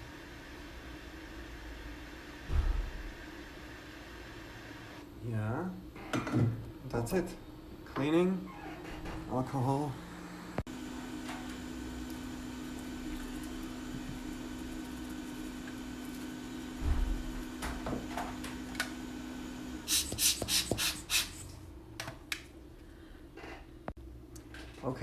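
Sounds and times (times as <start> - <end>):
bench equipment hum: 9.1 - 21.8
brush scrubbing circuit board: 19.9 - 21.5.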